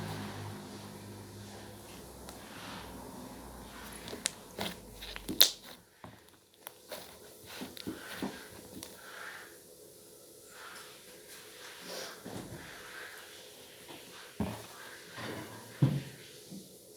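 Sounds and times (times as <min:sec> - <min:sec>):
slime squishing: 0:01.9 - 0:09.2
slime clicking pops: 0:04.0 - 0:05.8.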